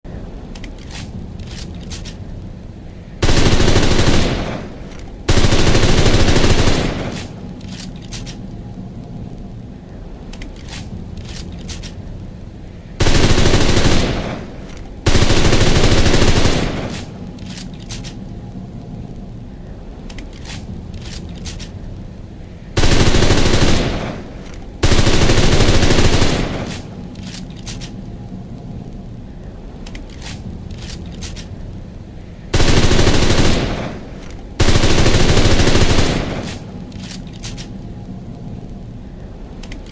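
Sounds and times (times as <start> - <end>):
low rumble: 0.0 - 39.9
submachine gun automatic fire: 3.2 - 4.6, 5.3 - 7.3, 13.0 - 14.4, 15.1 - 17.1, 22.8 - 24.2, 24.8 - 26.8, 32.6 - 34.0, 34.6 - 36.6.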